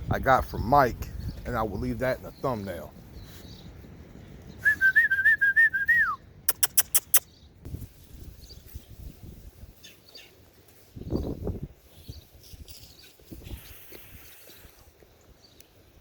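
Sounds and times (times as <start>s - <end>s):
warbling whistle: 4.6s - 7.2s
quick sharp clicks: 6.5s - 7.3s.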